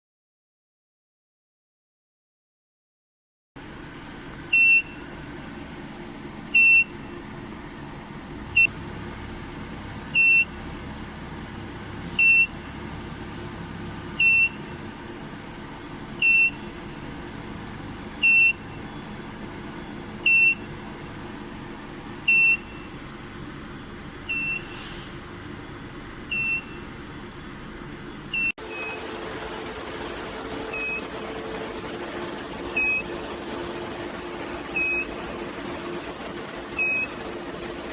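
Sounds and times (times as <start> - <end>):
steady machinery hum: 3.6 - 37.9
electronic beeper short high tone: 12.2 - 29.0.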